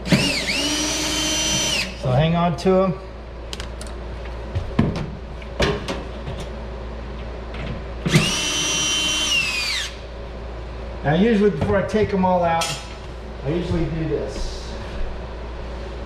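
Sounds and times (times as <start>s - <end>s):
cordless screw gun whining: 0.0s - 1.9s, 8.1s - 10.0s.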